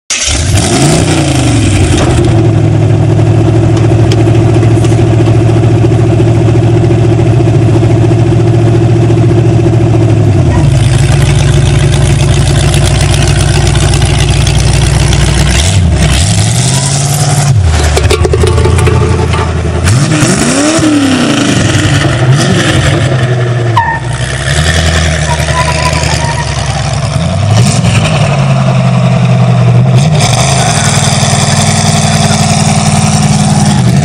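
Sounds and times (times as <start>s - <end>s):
car engine revving high: 18.7s - 34.0s.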